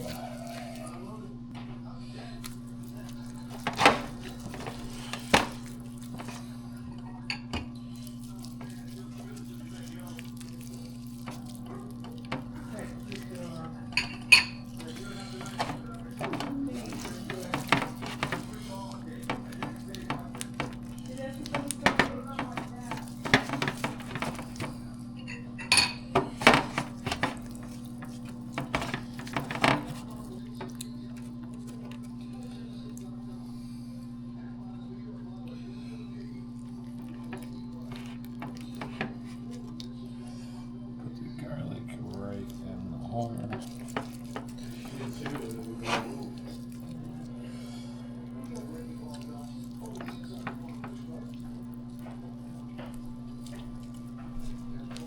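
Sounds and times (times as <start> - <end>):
dishes clanking: 2.4 - 6.6, 7.2 - 30.9, 37.1 - 39.9, 43.4 - 47.4.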